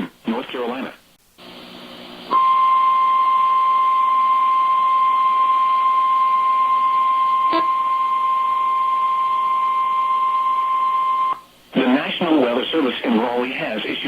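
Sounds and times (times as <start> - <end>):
long steady alarm beep: 2.3 - 11.4.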